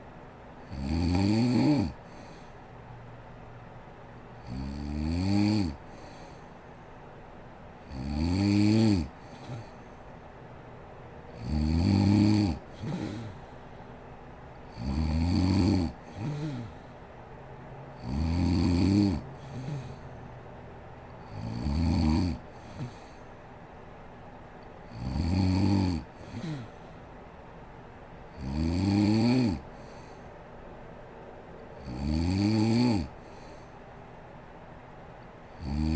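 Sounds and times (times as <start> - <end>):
woman snoring: 0.7 - 2.4, 4.4 - 6.4, 7.9 - 9.8, 11.4 - 13.5, 14.7 - 16.8, 18.0 - 20.0, 21.2 - 23.2, 24.9 - 26.9, 28.3 - 30.2, 31.8 - 33.6, 35.6 - 35.9.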